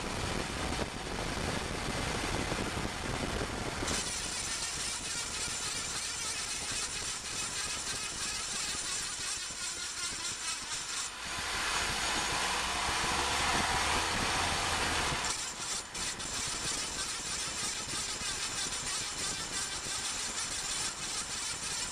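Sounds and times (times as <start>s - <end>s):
car road and tyre noise: 11.0s - 16.7s.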